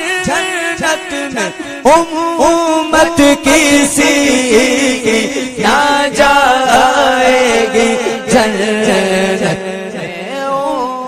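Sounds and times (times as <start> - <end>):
person singing devotional song: 0.0 - 11.0.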